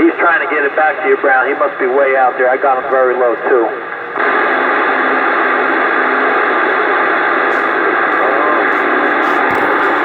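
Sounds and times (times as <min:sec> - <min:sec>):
radio static hissing: 0:04.2 - 0:10.0
weak distant radio station: 0:07.4 - 0:10.0.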